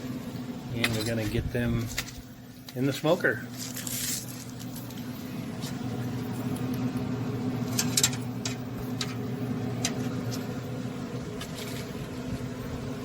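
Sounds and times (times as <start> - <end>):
grill fan humming: 0.0 - 13.0
light clicks and taps on grates: 0.8 - 2.9, 7.7 - 10.5.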